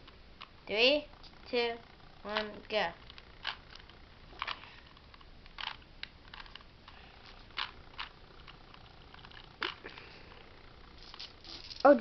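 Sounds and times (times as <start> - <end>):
plastic cube clicks and clacks: 2.3 - 6.7.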